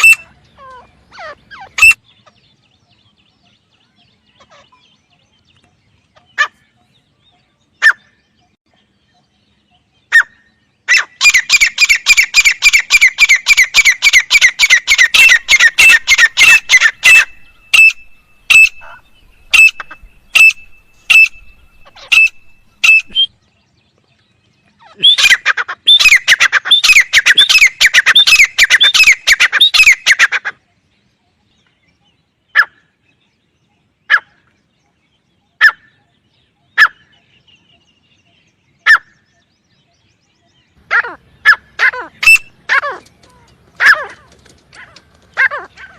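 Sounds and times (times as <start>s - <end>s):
francolin calling: 0.0s - 3.7s, 9.1s - 23.4s, 24.7s - 30.6s, 40.8s - 44.1s.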